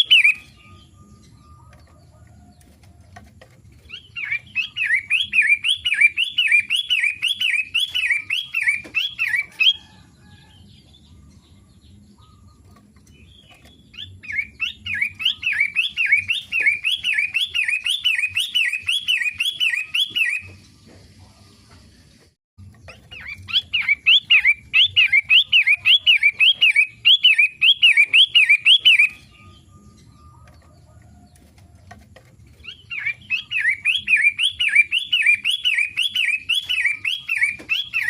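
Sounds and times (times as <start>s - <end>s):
bird singing sweeping notes: 0.0s - 2.4s, 3.8s - 20.9s, 22.6s - 31.3s, 32.6s - 38.0s.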